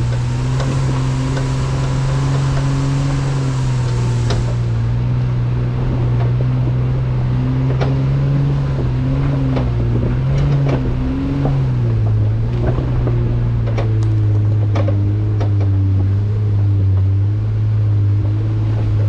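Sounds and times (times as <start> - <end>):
off-road engine at low revs: 0.0 - 19.0
knocks and rattles: 5.6 - 17.4.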